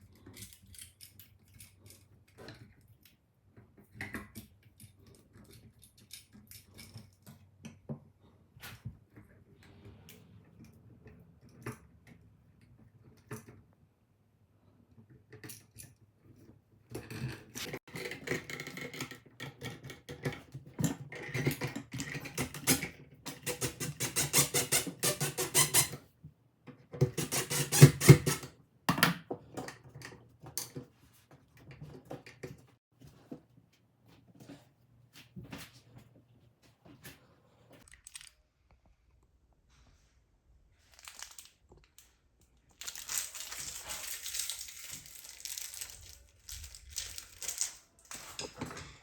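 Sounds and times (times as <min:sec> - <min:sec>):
scraping rubbing and squeaking: 0:22.6 - 0:26.0, 0:42.6 - 0:49.0.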